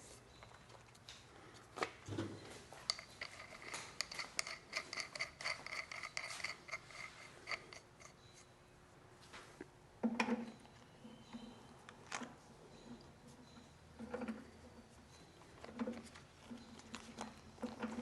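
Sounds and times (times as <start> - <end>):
small metal parts clicking: 2.9 - 8.4.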